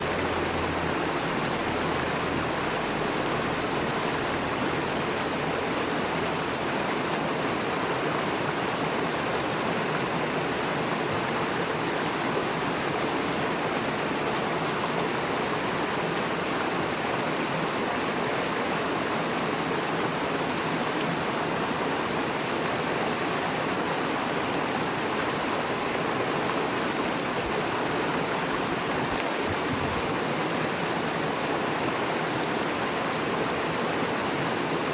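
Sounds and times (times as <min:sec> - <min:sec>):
river rushing over rocks: 0:00.0 - 0:34.9.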